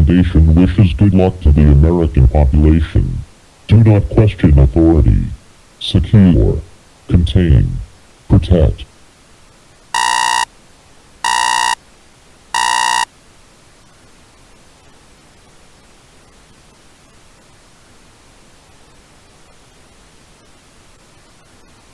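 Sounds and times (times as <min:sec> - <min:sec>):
faint static hiss: 0:00.0 - 0:21.9
electronic buzzing data bursts: 0:10.0 - 0:10.5, 0:11.2 - 0:11.8, 0:12.5 - 0:13.1.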